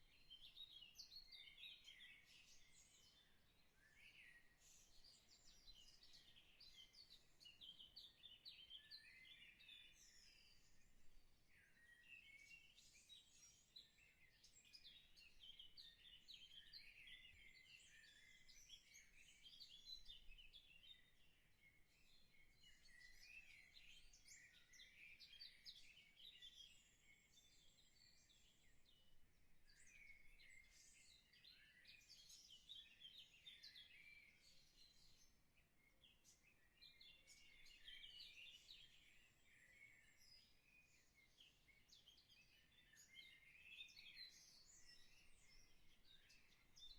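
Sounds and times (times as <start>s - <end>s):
faint birds chirping: 0.0s - 46.9s.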